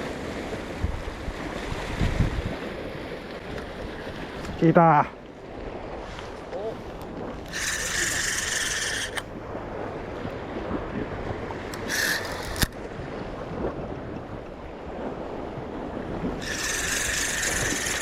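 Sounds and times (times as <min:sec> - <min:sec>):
waves washing against rocks: 0:00.0 - 0:18.0
fishing reel whirring: 0:07.4 - 0:09.3, 0:11.7 - 0:12.8, 0:16.4 - 0:18.0.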